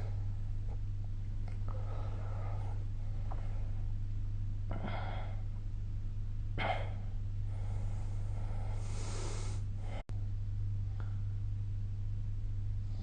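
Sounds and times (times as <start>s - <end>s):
steady low hum: 0.0s - 13.0s
person snoring: 8.7s - 9.6s.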